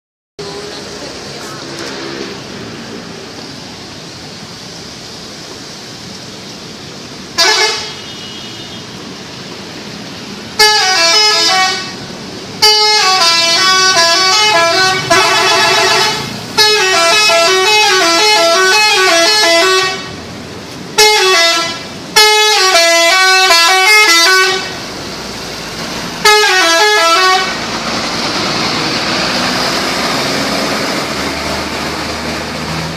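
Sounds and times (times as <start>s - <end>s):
traffic noise: 0.4s - 32.9s
musical air horn: 7.4s - 8.8s, 10.6s - 12.0s, 12.6s - 20.1s, 21.0s - 24.7s, 26.2s - 27.6s.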